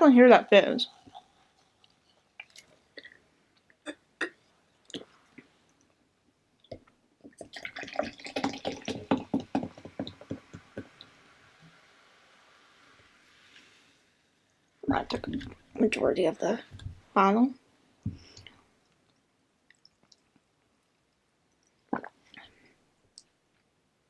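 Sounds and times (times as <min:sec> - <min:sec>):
soda glugging from bottle: 0:07.3 - 0:10.3, 0:21.9 - 0:22.2
soda fizzing hiss: 0:10.6 - 0:14.4.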